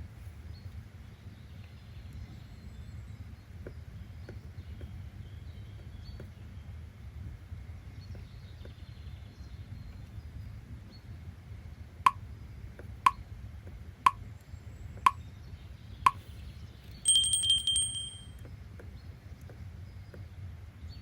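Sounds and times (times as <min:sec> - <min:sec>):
low background noise: 0:00.0 - 0:21.0
ringing bell alarm: 0:17.0 - 0:18.4.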